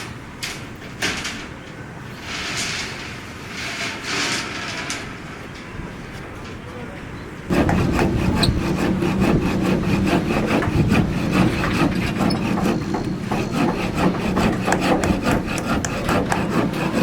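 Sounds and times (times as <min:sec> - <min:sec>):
hand tool scraping: 0:07.5 - 0:17.0
steady low hum: 0:07.5 - 0:17.0.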